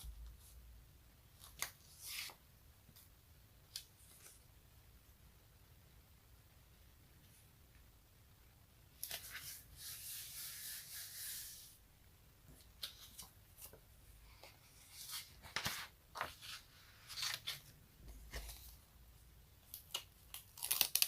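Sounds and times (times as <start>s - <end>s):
sticky snaps and crackles: 19.7s - 21.0s.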